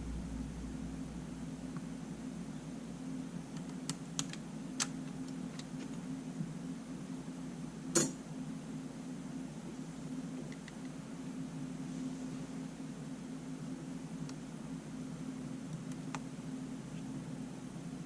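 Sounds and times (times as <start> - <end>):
steady low hum: 0.0 - 18.0
small clicks and taps of tools: 10.5 - 11.0.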